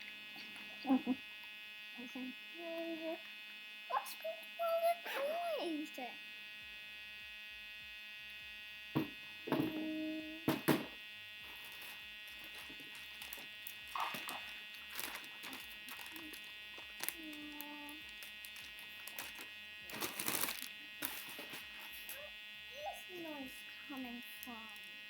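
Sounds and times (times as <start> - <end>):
steady buzzing drone: 0.0 - 25.0
short low hums: 11.4 - 25.0.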